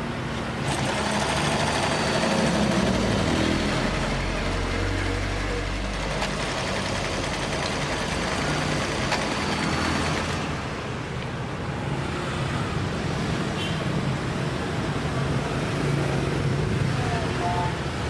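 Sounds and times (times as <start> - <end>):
sewing machine running: 0.6 - 4.5, 5.8 - 10.7.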